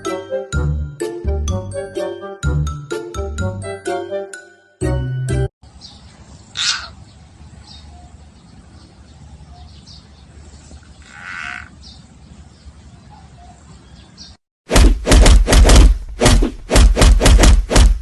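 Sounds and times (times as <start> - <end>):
short animal calls: 6.6 - 7.0, 11.0 - 11.7.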